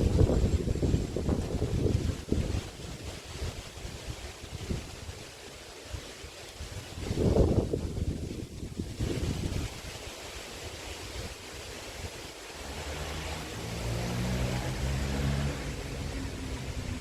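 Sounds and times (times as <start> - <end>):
wind rushing over microphone: 0.0 - 17.0
passing vehicle engine hum: 12.5 - 17.0.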